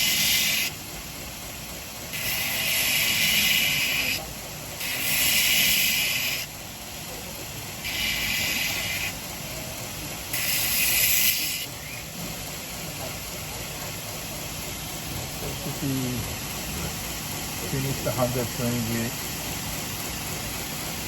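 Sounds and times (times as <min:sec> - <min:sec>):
belt grinder running: 0:00.0 - 0:00.8, 0:02.0 - 0:06.6, 0:07.8 - 0:12.0
blade grinding hiss: 0:00.0 - 0:06.9, 0:07.7 - 0:12.2.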